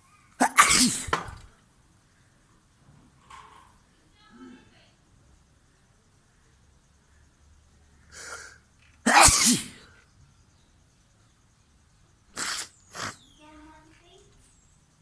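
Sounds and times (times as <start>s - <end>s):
loud sneeze: 0.4s - 1.5s, 9.1s - 9.9s, 12.4s - 13.2s.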